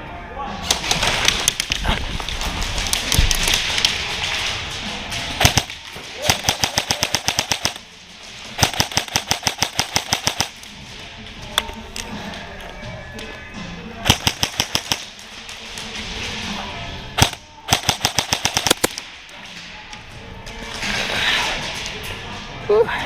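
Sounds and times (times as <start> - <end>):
airsoft rifle bursts: 17.2 - 19.0.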